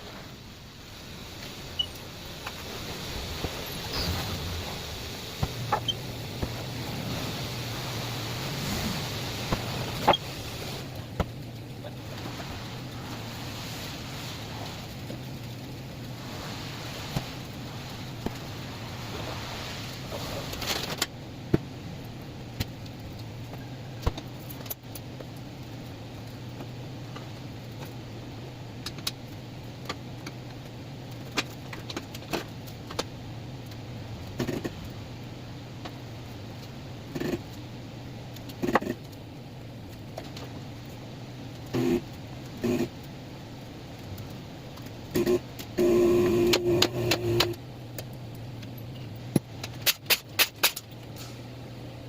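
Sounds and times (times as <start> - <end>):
steady low hum: 0.0 - 52.0.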